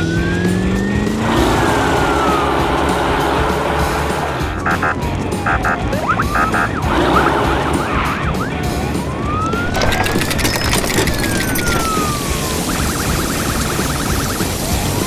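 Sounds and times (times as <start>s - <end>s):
emergency siren wailing: 0.0s - 15.0s.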